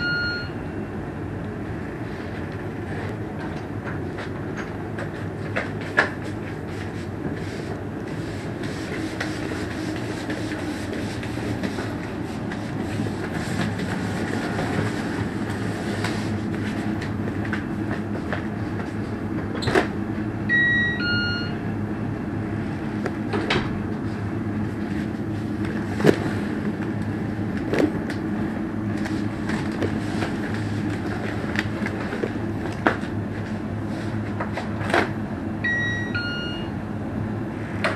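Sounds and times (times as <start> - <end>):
two-tone doorbell chime: 20.5 - 21.6, 35.6 - 36.7.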